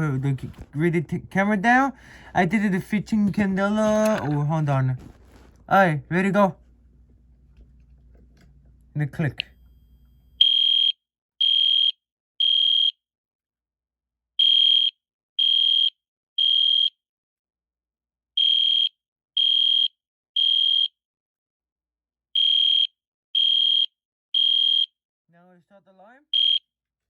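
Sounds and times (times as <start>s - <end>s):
electronic alarm horn beeping: 10.4s - 13.0s, 14.4s - 16.9s, 18.4s - 20.9s, 22.4s - 24.9s, 26.4s - 26.6s.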